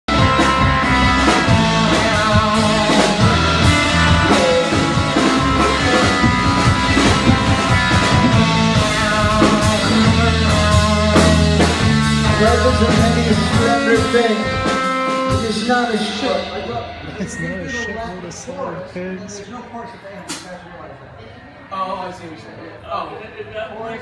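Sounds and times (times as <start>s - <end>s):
electric guitar: 0.1s - 18.0s
drum kit beat: 0.1s - 18.3s
low bass line: 0.1s - 18.6s.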